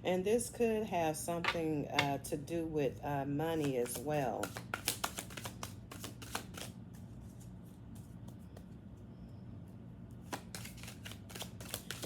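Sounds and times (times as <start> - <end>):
cards being shuffled: 3.6 - 8.7, 10.2 - 12.0.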